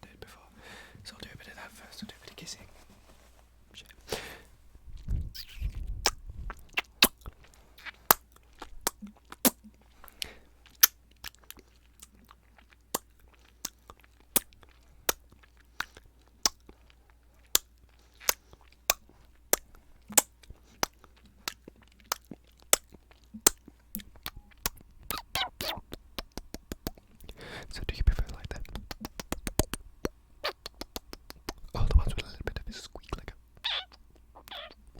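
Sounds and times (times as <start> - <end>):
sharp asmr clicks: 28.5 - 31.6.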